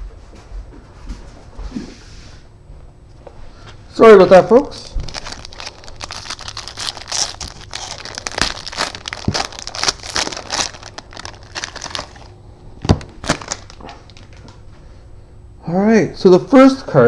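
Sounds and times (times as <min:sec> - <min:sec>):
plastic wrapping crinkling and tearing: 0:05.0 - 0:12.3, 0:12.9 - 0:14.5.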